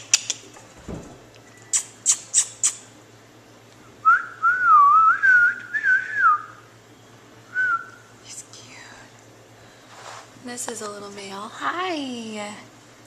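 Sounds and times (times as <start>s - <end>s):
person whistling: 4.0s - 6.6s, 7.5s - 8.0s.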